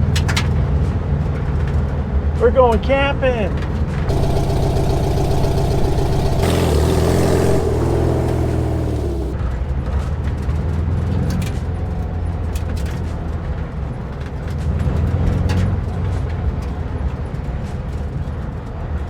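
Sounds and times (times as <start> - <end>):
van engine droning: 4.1 - 9.4.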